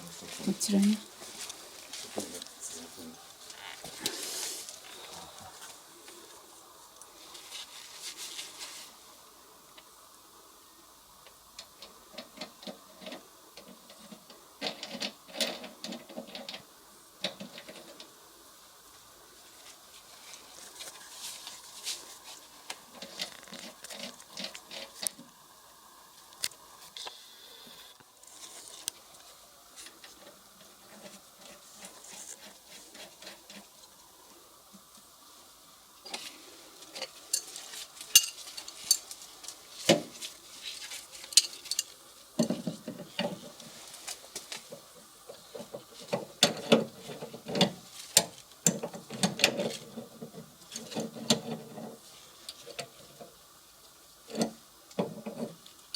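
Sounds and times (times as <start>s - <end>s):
brief rustling hisses: 1.2s - 9.1s.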